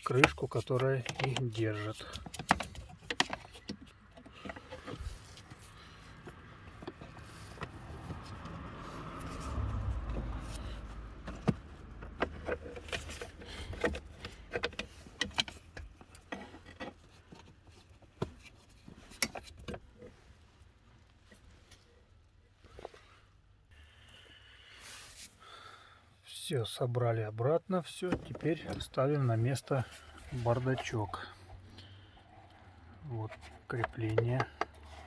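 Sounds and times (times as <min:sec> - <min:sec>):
plastic cover rubbing and scraping: 0:11.4 - 0:17.7, 0:28.0 - 0:31.7, 0:32.3 - 0:35.0.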